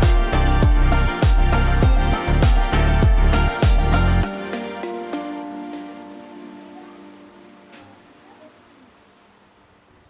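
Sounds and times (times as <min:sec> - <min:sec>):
instrumental music with drum thumps: 0:00.0 - 0:06.1.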